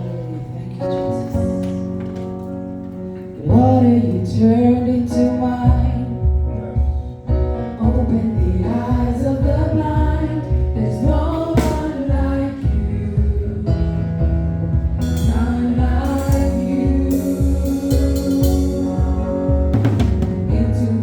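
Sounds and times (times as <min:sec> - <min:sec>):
pulsing bass beat: 0:05.7 - 0:21.0
singers with band: 0:07.6 - 0:21.0.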